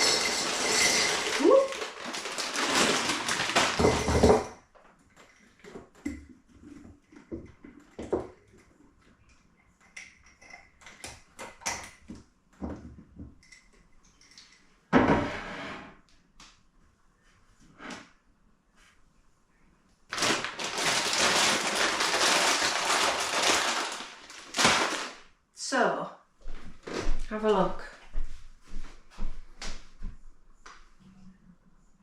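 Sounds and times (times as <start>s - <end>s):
jars knocking and clinking: 0.0s - 1.5s, 3.3s - 4.6s.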